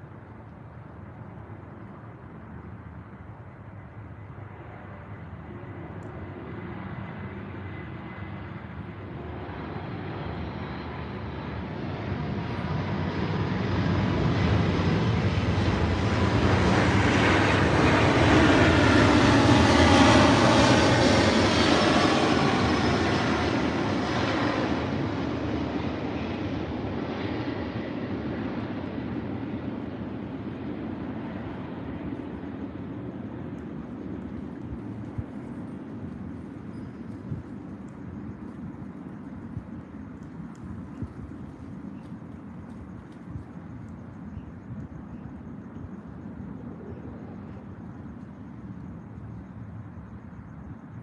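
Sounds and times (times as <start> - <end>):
aircraft flying over: 0.0 - 51.0.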